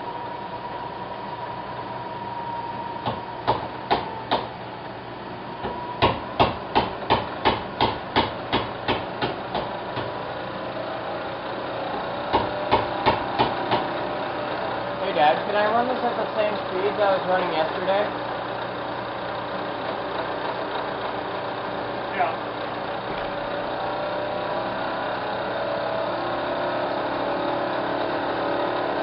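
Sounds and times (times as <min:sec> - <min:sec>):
faint machine hum: 0:00.0 - 0:29.0
hammer tapping: 0:03.0 - 0:04.5, 0:05.6 - 0:10.1, 0:12.3 - 0:13.8.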